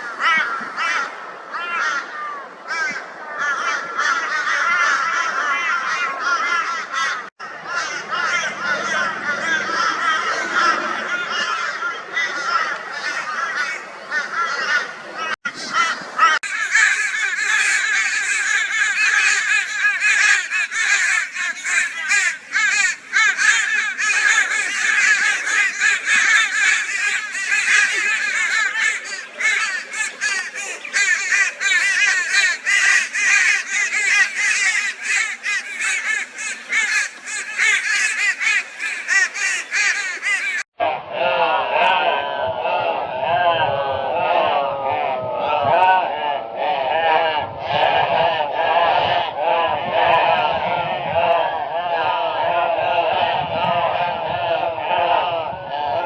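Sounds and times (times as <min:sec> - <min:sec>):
crows cawing: 0:00.0 - 0:40.7.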